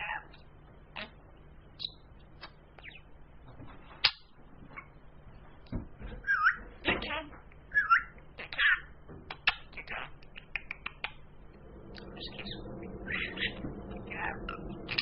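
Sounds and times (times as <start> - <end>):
budgerigar clicks and chirps: 7.5 - 11.2.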